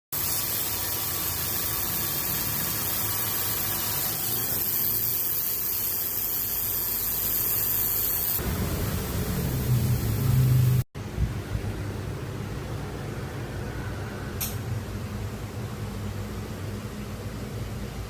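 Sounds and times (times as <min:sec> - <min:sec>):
compressor hissing whir: 0:00.2 - 0:11.3.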